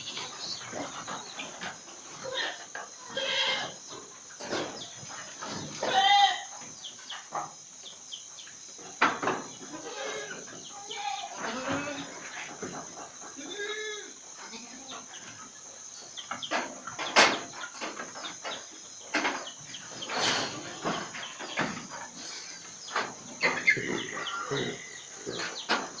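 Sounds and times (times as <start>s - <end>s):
chickens calling: 0.0s - 26.0s
goats bleating: 2.2s - 3.8s, 5.8s - 6.5s, 9.7s - 12.2s, 13.4s - 14.8s.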